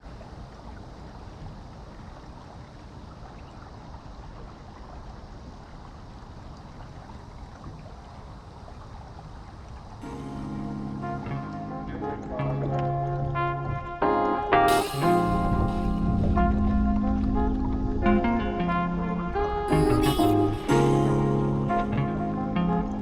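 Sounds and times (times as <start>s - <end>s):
water rushing along hull: 0.0s - 23.0s
music: 10.0s - 23.0s.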